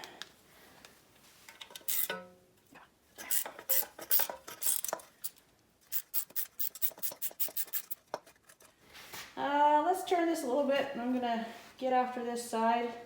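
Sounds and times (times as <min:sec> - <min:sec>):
metal tools clinking and scraping: 0:01.5 - 0:02.3.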